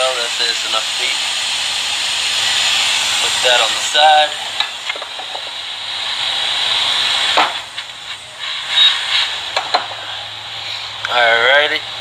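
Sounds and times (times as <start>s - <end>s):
hot-air station hissing: 0.0s - 12.0s.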